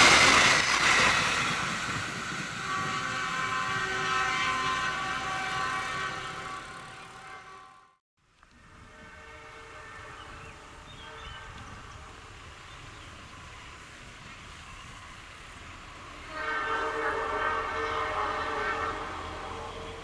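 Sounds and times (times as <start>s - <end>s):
low rumble of train: 0.0s - 20.0s
train horn blast: 2.4s - 14.0s, 15.9s - 20.0s.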